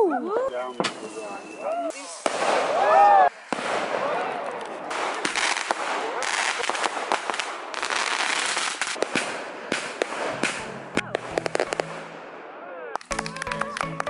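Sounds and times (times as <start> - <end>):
fireworks crackling and banging: 0.7 - 14.0
music: 10.4 - 12.0, 13.0 - 14.0.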